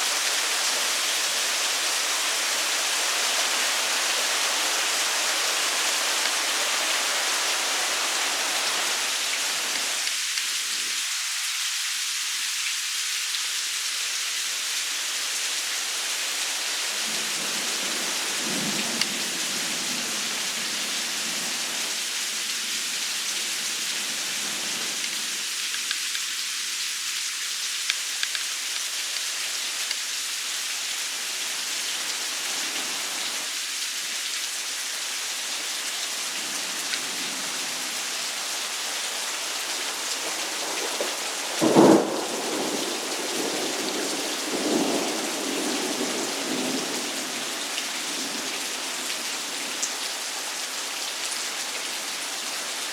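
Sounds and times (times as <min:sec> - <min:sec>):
rain hissing: 0:00.0 - 0:52.9
thunder rumbling: 0:40.3 - 0:43.6.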